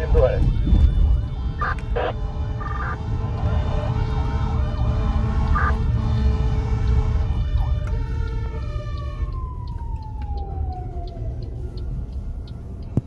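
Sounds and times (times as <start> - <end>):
fire engine siren winding down: 0.0 - 12.9
truck engine rumble: 0.0 - 13.0.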